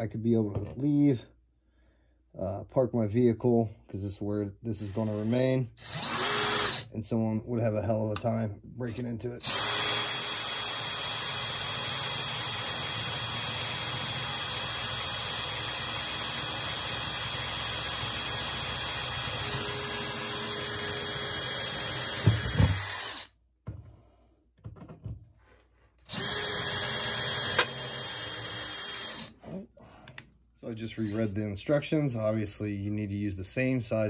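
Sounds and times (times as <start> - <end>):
electric drill boring: 4.8 - 6.9, 9.4 - 23.3, 26.1 - 29.4
knocks: 24.6 - 25.3.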